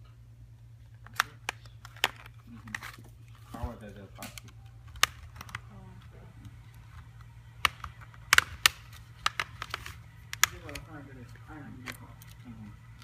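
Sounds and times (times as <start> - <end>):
steady low hum: 0.0 - 13.0
plastic clicks and taps: 7.6 - 10.9.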